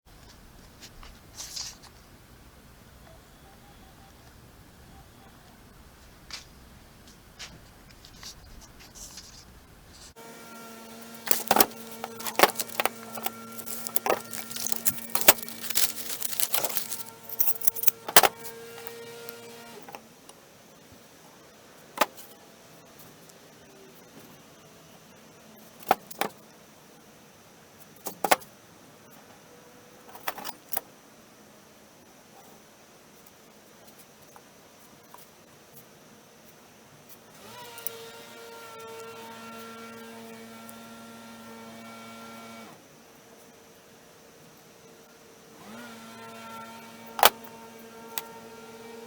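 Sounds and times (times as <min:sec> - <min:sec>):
steady low hum: 0:00.1 - 0:19.5
metallic clinking and knocking: 0:11.3 - 0:18.9.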